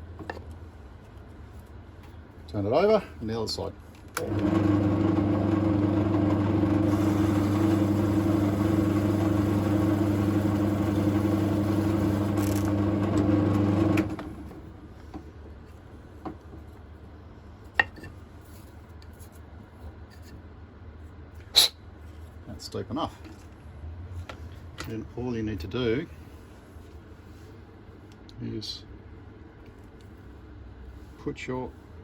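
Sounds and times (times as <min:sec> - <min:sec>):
drill press motor running: 0:04.2 - 0:14.7.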